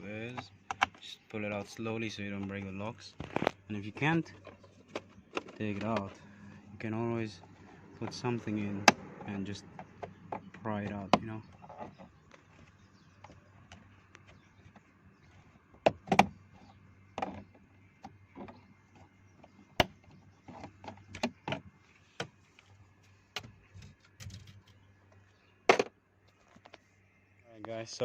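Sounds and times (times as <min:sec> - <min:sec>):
faint low hum: 0:00.0 - 0:21.2.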